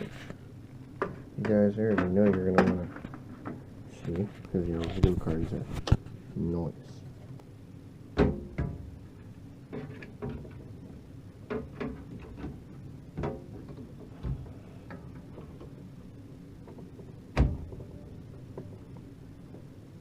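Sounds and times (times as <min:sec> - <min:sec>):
computer parts clicking and knocking: 0:01.0 - 0:03.6.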